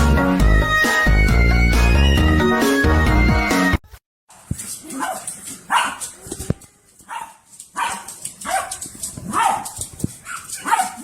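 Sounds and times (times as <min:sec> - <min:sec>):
dog barking: 0:04.9 - 0:06.1, 0:07.1 - 0:11.0.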